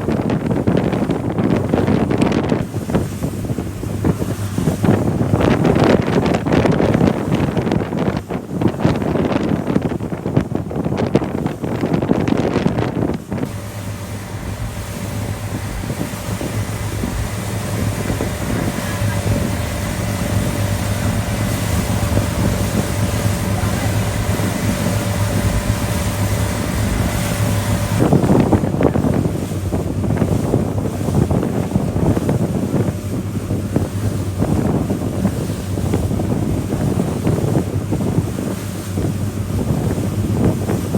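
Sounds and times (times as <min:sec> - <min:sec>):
boat engine humming: 0:00.0 - 0:40.9
wind buffeting microphone: 0:00.0 - 0:40.9.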